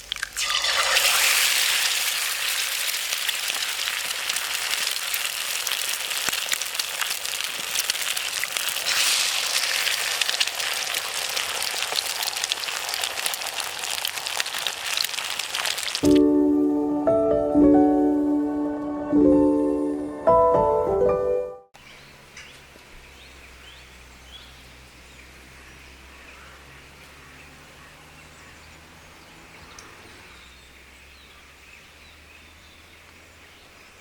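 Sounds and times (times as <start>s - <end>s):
campfire crackling: 0.0s - 16.2s
soft piano music: 16.0s - 21.7s.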